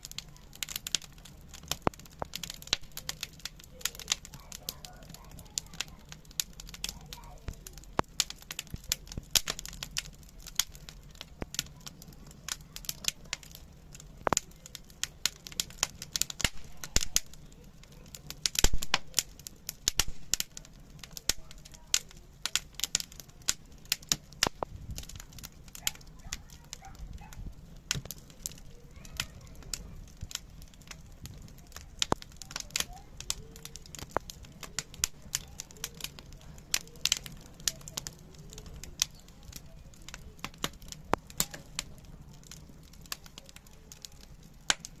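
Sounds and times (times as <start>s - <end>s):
wood fire crackling: 0.0s - 45.0s.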